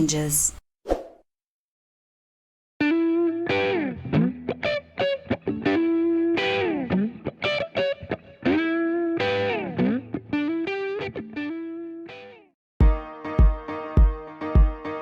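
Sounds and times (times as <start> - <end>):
guitar with effects sliding notes: 2.8 - 15.0.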